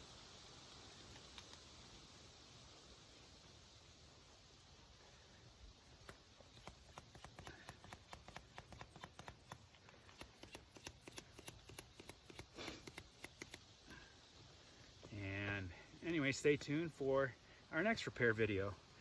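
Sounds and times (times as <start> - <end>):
faint quick clicking: 1.1 - 1.6.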